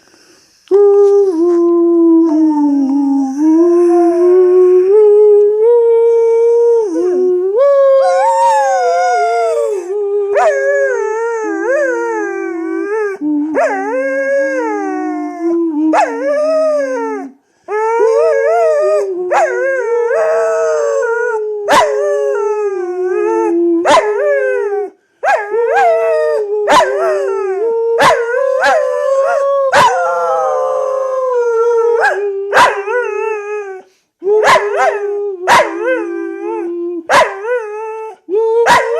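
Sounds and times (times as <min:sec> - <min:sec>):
dog howling: 0:17.9 - 0:33.8.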